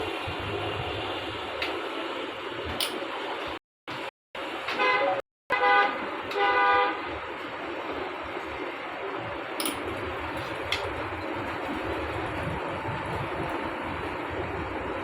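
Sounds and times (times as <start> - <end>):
vehicle horn honking: 4.7 - 7.1.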